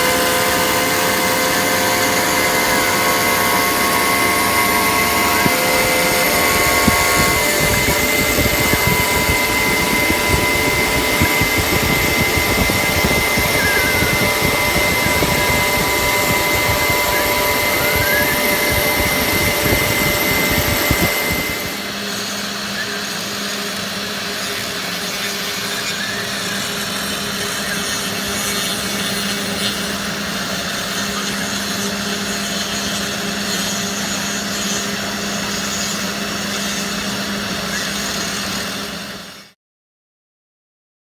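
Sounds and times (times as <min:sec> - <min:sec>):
bit cutting into wood: 0:00.0 - 0:22.4
router spindle whine: 0:00.0 - 0:39.6.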